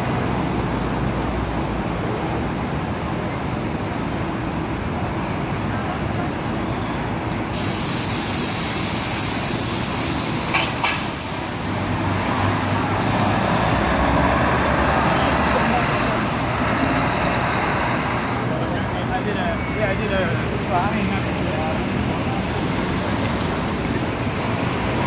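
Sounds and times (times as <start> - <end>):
traffic engines and tyres: 0.0 - 25.0
loud high hiss: 7.5 - 13.8.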